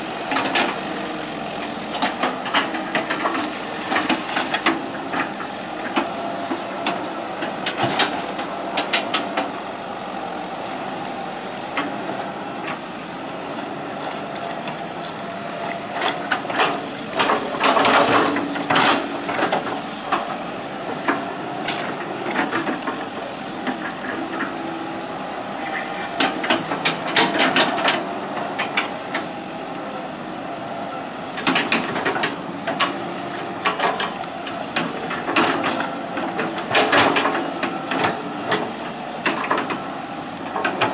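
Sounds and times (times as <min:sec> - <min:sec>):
excavator running: 0:00.0 - 0:40.9
excavator bucket knocking and clattering: 0:01.6 - 0:09.6, 0:16.0 - 0:24.8, 0:26.2 - 0:29.3, 0:31.4 - 0:39.9, 0:40.5 - 0:40.9.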